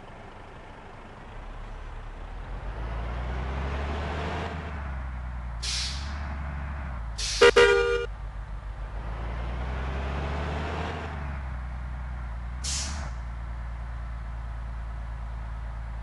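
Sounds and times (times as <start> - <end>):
diesel bus engine running: 0.0 - 16.0
air brake hiss: 5.6 - 6.2, 7.2 - 7.6, 12.6 - 13.1
bus horn blast: 7.2 - 8.1.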